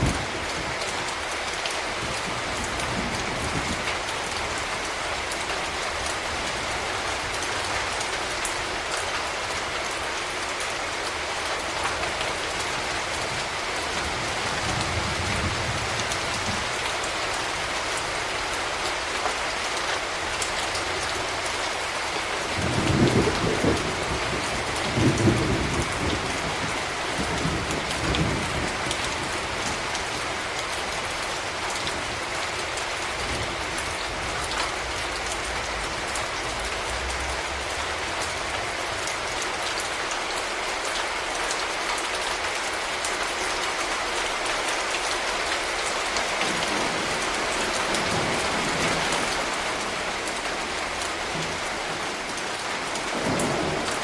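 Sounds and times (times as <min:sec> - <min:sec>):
low rumbles of thunder: 0:00.0 - 0:00.8, 0:01.9 - 0:04.7, 0:22.5 - 0:30.3, 0:52.9 - 0:54.0
steady rain falling: 0:00.0 - 0:54.0.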